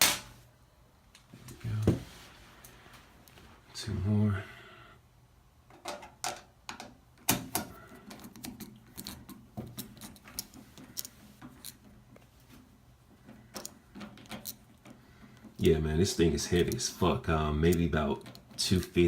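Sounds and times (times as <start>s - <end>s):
screws clicking and tapping: 8.0s - 11.9s, 13.2s - 15.6s.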